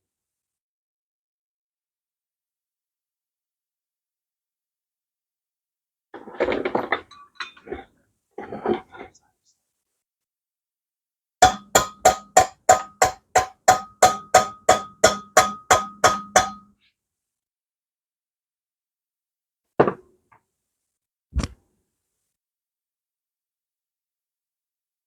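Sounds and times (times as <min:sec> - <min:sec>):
hammer striking metal: 0:11.4 - 0:16.7.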